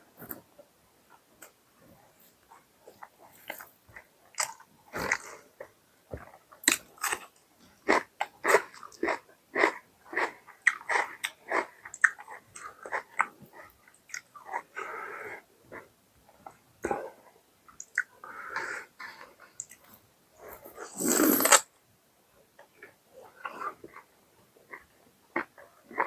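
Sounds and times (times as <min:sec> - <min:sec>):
wet chewing and smacking: 0:02.9 - 0:14.6.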